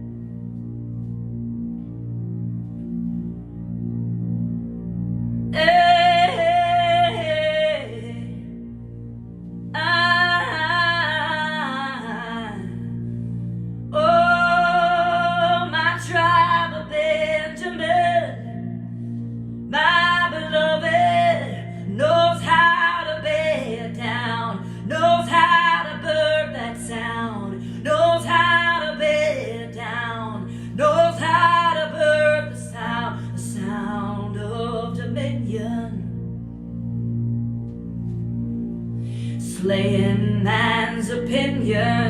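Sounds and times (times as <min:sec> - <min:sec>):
low instrumental drone: 0:00.0 - 0:42.0
high voice singing a chant: 0:05.6 - 0:08.4, 0:09.8 - 0:13.0, 0:13.9 - 0:18.7, 0:19.7 - 0:36.1, 0:39.2 - 0:42.0.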